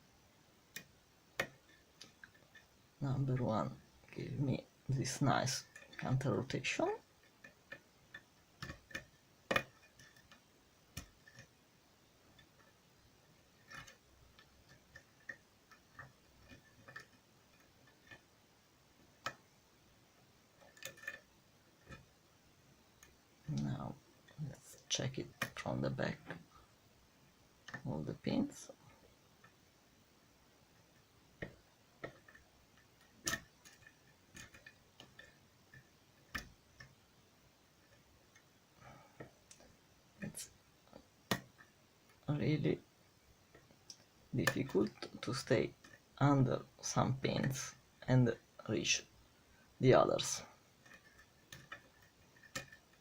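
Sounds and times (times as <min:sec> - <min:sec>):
lock pick clicking on pins: 0:50.8 - 0:53.0.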